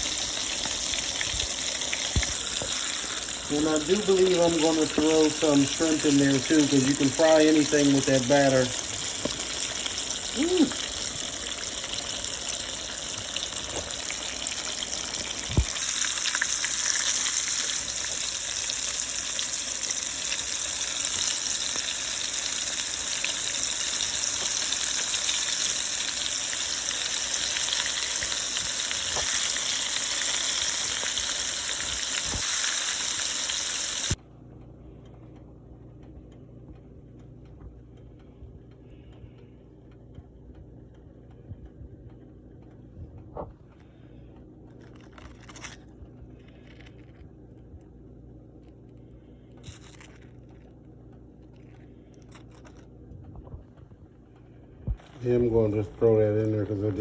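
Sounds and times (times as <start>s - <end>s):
food sizzling in hot oil: 0.0s - 34.2s
faint low hum: 34.2s - 57.0s.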